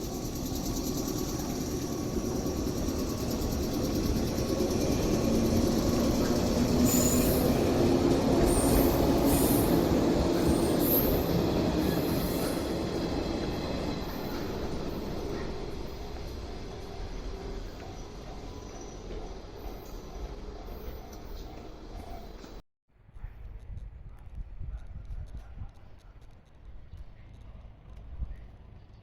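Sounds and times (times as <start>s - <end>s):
train passing: 0.0s - 22.6s
high-pitched wheel squeals: 6.4s - 13.1s.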